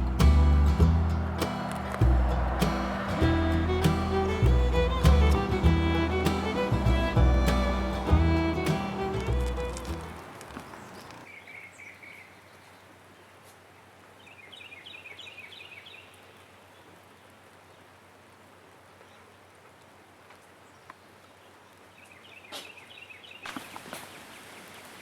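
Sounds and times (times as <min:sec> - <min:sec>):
small birds chirping: 0:00.0 - 0:12.9, 0:20.6 - 0:24.8
light rain hiss: 0:00.0 - 0:25.0.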